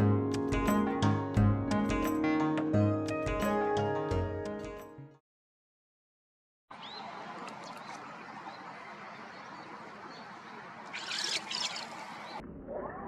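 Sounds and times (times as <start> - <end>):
flowing river water: 6.7 - 12.4
rising bird chirp: 6.7 - 12.4.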